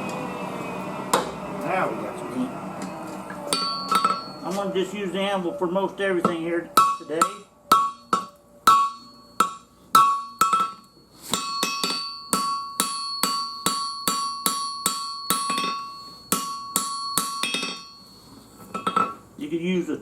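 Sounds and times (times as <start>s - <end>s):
anvil ringing: 3.5s - 4.7s, 6.2s - 19.2s
hammer striking steel on anvil: 3.5s - 4.7s, 6.2s - 19.2s.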